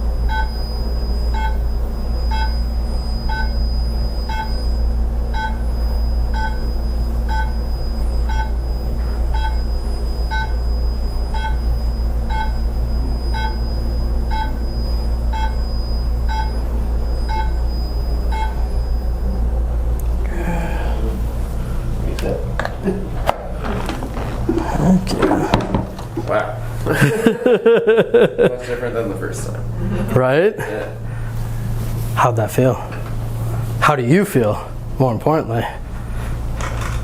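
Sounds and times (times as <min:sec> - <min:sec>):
laser unit beeping: 0:00.0 - 0:19.5
steady low hum: 0:00.0 - 0:37.0
faint high steady tone: 0:00.3 - 0:19.4.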